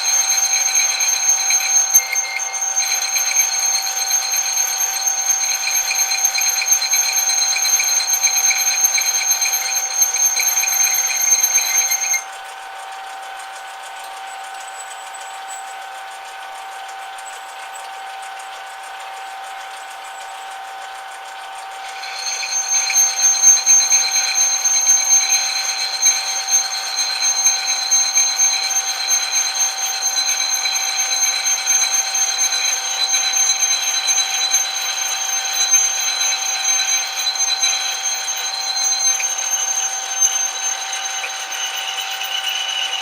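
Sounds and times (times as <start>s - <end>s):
high-pitched whine: 0.0s - 12.3s, 21.6s - 43.0s
metal lathe whining: 0.0s - 12.3s, 19.3s - 43.0s.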